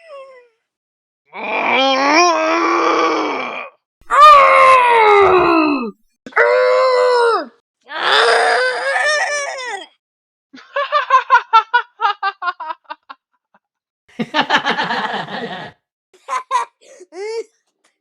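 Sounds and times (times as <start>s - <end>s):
cartoon character laughing: 14.2s - 15.7s.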